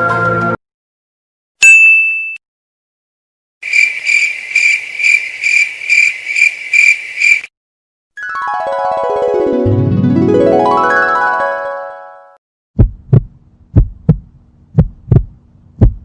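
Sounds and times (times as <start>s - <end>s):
cricket chirping: 3.6s - 7.5s.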